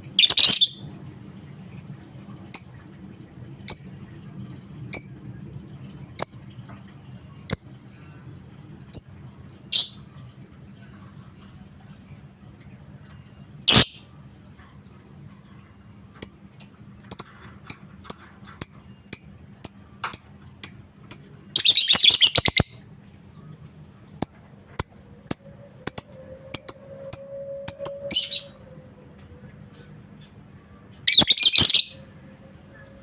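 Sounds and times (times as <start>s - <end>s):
bird chirping and chattering: 0.2s - 0.9s, 2.6s - 2.8s, 3.7s - 4.0s, 4.9s - 5.2s, 6.2s - 6.4s, 7.5s - 7.7s, 9.0s - 9.2s, 9.8s - 10.1s, 16.2s - 22.8s, 24.2s - 28.5s, 31.1s - 32.0s.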